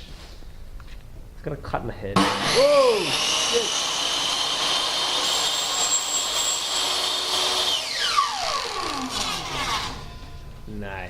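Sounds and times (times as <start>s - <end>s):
table saw high whine: 2.2s - 10.6s.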